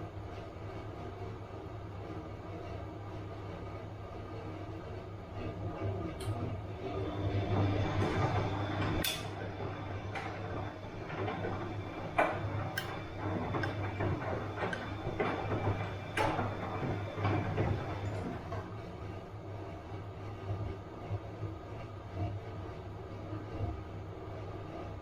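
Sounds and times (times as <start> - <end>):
washing machine motor hum: 0.0 - 25.0
clicks and knocks from load: 12.1 - 18.6.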